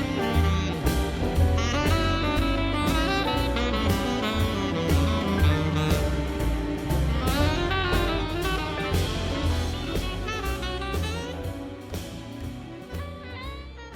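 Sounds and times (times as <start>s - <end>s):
drum kit: 0.0s - 13.9s
jazz saxophone lead: 0.0s - 13.9s.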